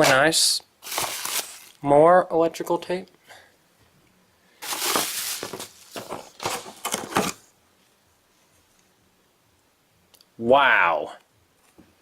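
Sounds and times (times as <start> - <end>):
packaging crinkling and rustling: 0.8 - 1.8, 4.6 - 7.5.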